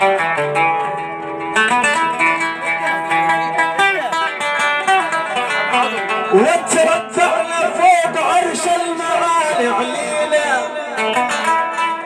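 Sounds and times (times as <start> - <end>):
plucked string instrument melody: 0.0 - 12.0.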